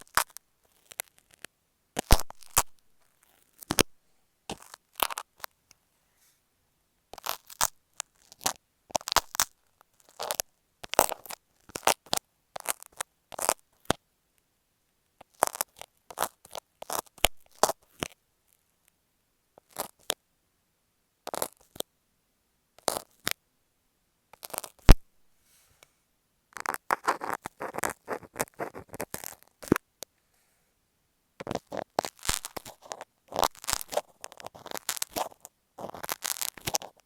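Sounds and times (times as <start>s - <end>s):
crackly scratches and taps: 0.0s - 5.8s, 7.1s - 19.0s, 19.6s - 20.2s, 21.3s - 21.9s, 22.8s - 23.4s, 24.3s - 25.0s, 26.5s - 30.1s, 31.4s - 37.0s.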